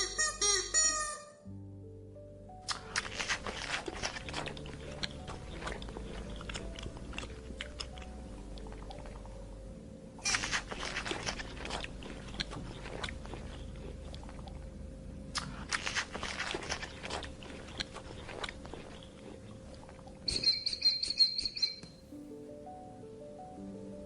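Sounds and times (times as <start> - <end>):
high-pitched squeaks: 0.0 - 1.4
animal crunching and chewing food: 2.7 - 9.3, 10.2 - 14.7, 15.3 - 21.7.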